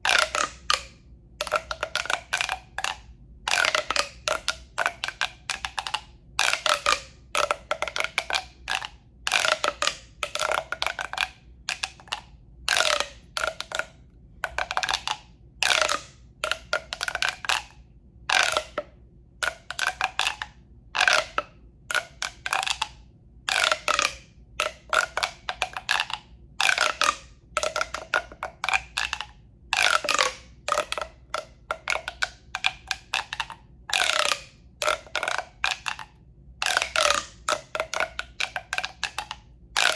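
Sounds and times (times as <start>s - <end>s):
hollow resonant tube sounds: 0.0s - 17.7s.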